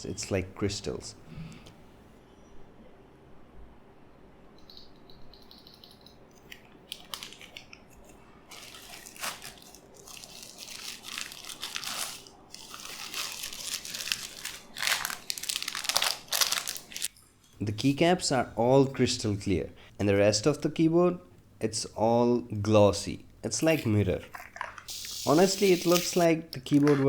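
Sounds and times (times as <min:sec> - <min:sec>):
plastic packaging crinkling: 0:06.8 - 0:17.1.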